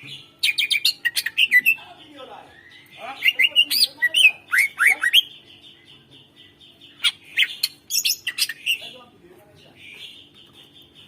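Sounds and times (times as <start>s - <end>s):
bird singing whistled notes: 2.4s - 9.0s.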